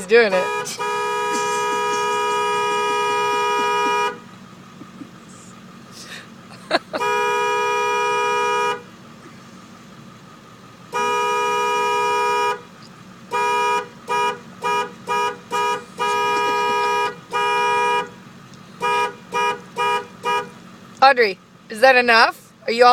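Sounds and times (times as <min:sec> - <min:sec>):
truck horn honking: 0:00.0 - 0:04.5, 0:06.9 - 0:09.0, 0:10.8 - 0:20.7.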